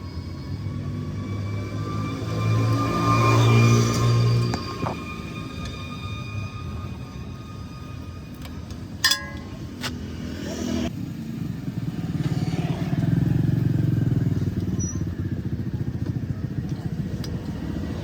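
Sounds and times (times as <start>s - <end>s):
sharp metallic clink: 9.0s - 10.0s.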